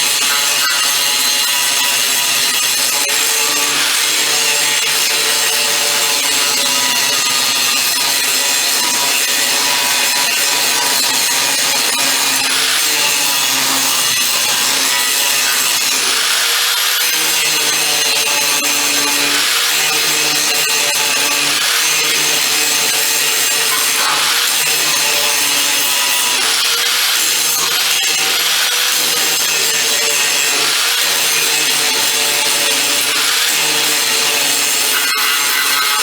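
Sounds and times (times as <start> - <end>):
angle grinder grinding metal: 0.0 - 36.0.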